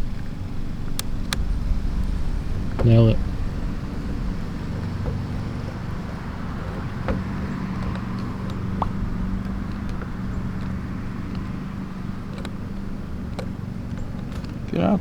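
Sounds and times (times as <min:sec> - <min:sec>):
low mechanical hum: 0:00.0 - 0:15.0
light clicks and taps: 0:04.6 - 0:15.0.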